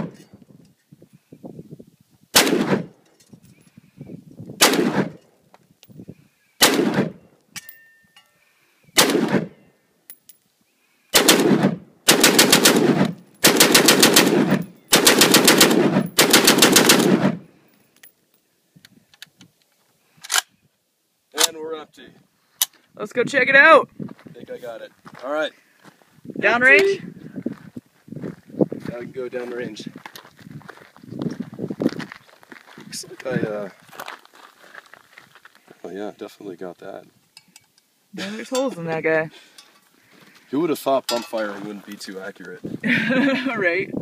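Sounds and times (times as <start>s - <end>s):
pistol shots: 2.4s - 2.9s, 4.6s - 5.1s, 6.6s - 7.2s, 9.0s - 9.5s, 11.2s - 17.4s.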